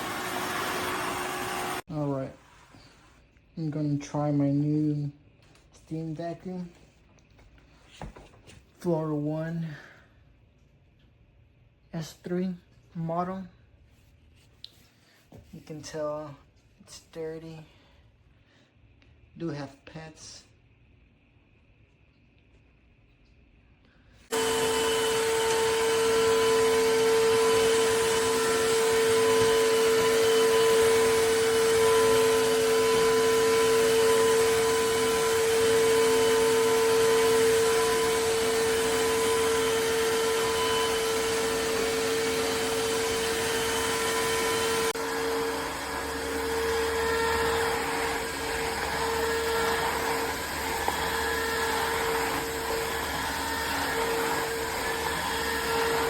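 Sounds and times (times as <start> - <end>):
vacuum mop motor whine: 0.0 - 1.9, 24.3 - 56.0.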